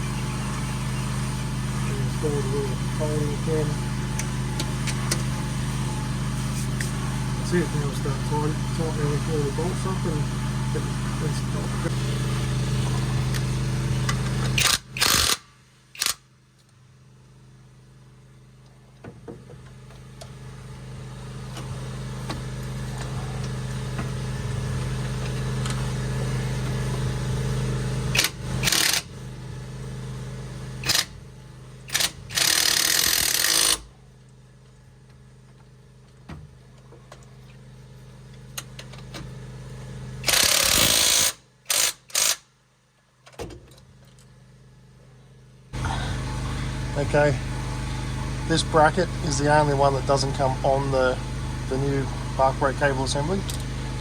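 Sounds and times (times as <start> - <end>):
impact wrench bursts: 13.2 - 16.3, 28.1 - 29.2, 30.8 - 31.2, 31.8 - 33.9, 40.2 - 42.5
steady hum: 45.7 - 54.0.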